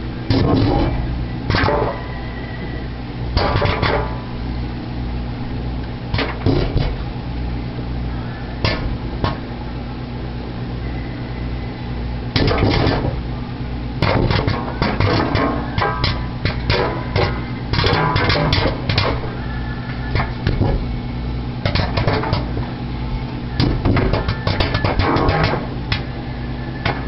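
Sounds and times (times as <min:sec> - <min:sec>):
microwave oven humming: 0:00.0 - 0:27.0
popcorn popping: 0:00.3 - 0:02.0, 0:03.4 - 0:04.2, 0:06.1 - 0:07.0, 0:12.4 - 0:13.2, 0:14.0 - 0:19.2, 0:21.6 - 0:22.7, 0:23.6 - 0:26.1.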